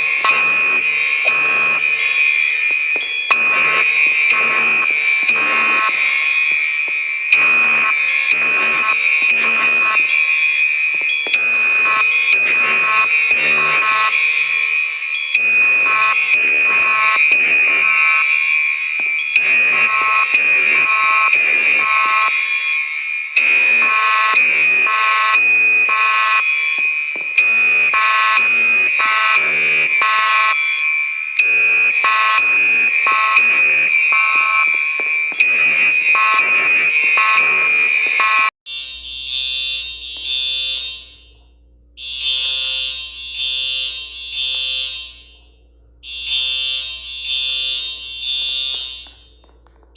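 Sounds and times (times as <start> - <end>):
high-pitched alarm pulses: 0.0 - 45.4, 46.0 - 49.4
steady high tone: 0.0 - 49.3
fire alarm blasts: 0.0 - 49.9
low electrical hum: 45.1 - 46.3.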